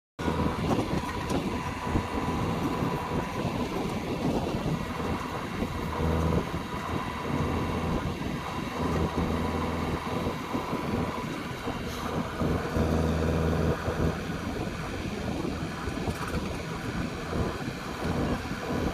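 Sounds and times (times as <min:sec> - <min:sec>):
diesel engine running under load: 0:00.2 - 0:18.9.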